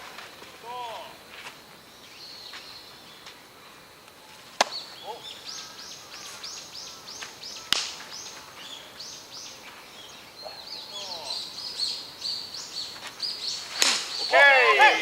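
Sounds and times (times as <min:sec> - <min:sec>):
small bird chirping: 0:04.3 - 0:14.7
sharp smacks: 0:04.6 - 0:04.8, 0:07.2 - 0:08.2, 0:13.6 - 0:14.3.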